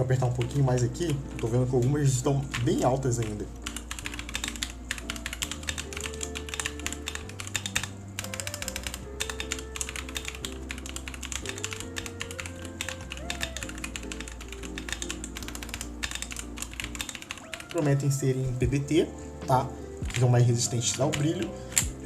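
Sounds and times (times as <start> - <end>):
mechanical keyboard typing: 0.2 - 18.7, 20.0 - 22.0
background music with bass line: 17.7 - 22.0.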